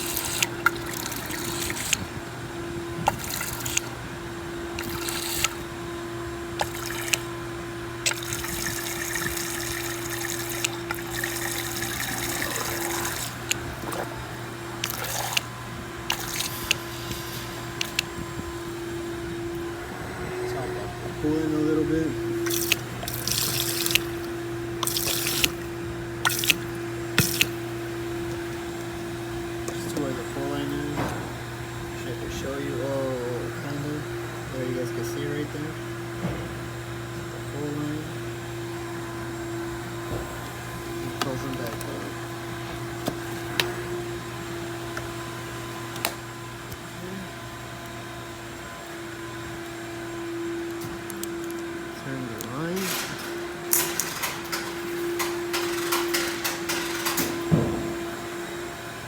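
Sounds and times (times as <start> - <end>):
fluid pouring from a bottle: 0.0 - 2.1, 3.0 - 4.0, 4.7 - 5.6, 6.6 - 7.3, 8.0 - 18.1, 22.4 - 27.7
steady motor hum: 0.0 - 59.0
plastic caps clicking shut: 17.7 - 18.1, 22.4 - 25.6, 26.3 - 27.6.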